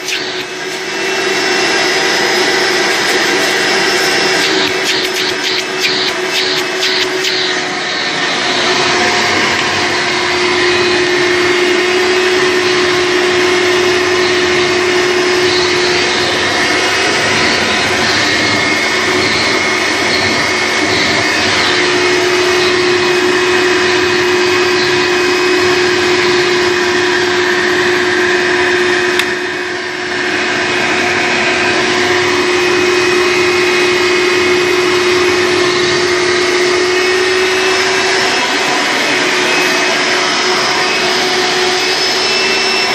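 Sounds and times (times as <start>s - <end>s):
vacuum cleaner running: 0.0s - 42.9s
sharp click: 4.4s - 7.5s.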